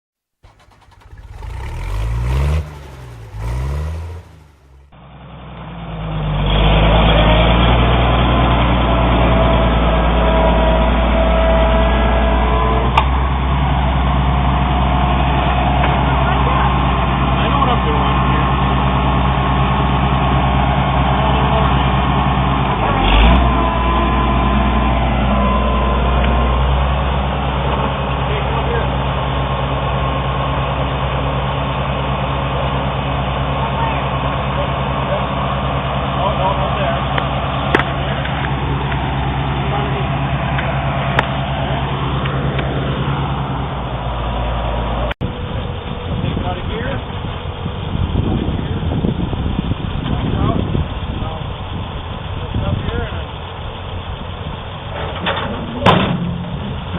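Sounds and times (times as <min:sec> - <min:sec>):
tractor engine running: 0:00.4 - 0:05.0, 0:24.0 - 0:56.9.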